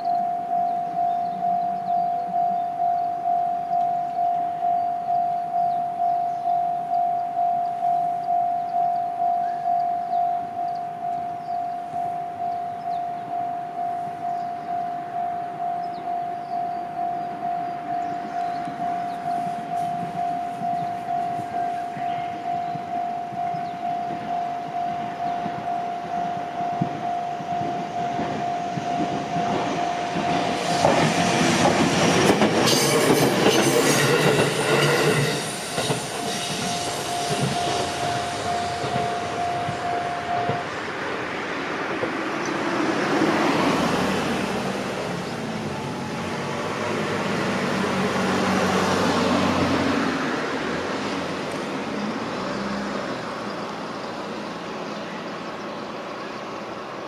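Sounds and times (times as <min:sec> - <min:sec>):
level-crossing alarm ringing: 0:00.0 - 0:41.5
road vehicle engines: 0:00.0 - 0:57.0
train wheels clacking on rails: 0:17.1 - 0:53.7.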